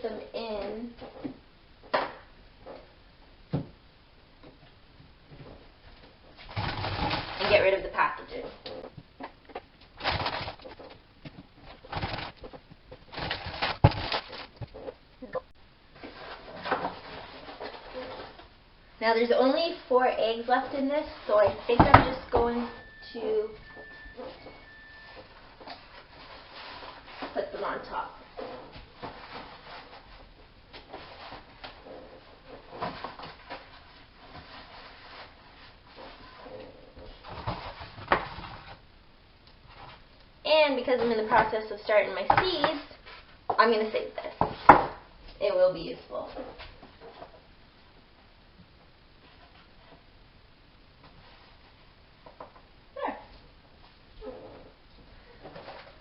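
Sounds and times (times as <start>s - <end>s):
rustling of egg cartons and packaging: 6.2s - 8.6s, 10.0s - 15.0s, 24.2s - 38.8s.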